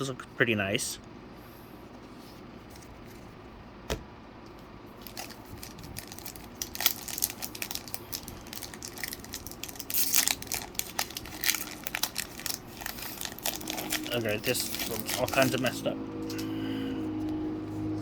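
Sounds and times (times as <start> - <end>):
foil wrapper crinkling and tearing: 5.0 - 15.8.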